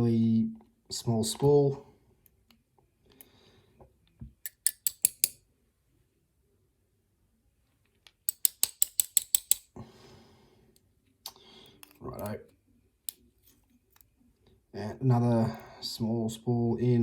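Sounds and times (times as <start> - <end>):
metallic lock parts clicking: 4.4 - 5.4, 8.1 - 9.7.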